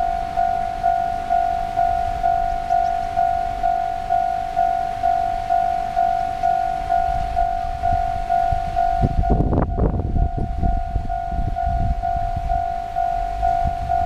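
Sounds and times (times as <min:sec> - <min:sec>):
level crossing warning bell: 0:00.0 - 0:14.0
low rumble: 0:06.4 - 0:14.0.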